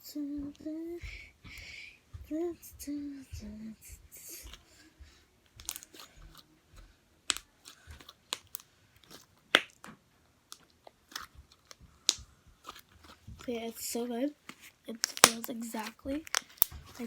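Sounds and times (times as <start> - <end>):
slime squished by hand: 7.3 - 9.9, 14.5 - 17.0.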